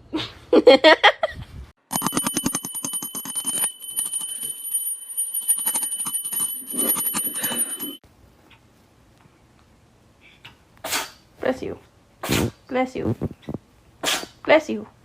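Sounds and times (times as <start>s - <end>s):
small jingle bell shaken: 1.9s - 8.0s.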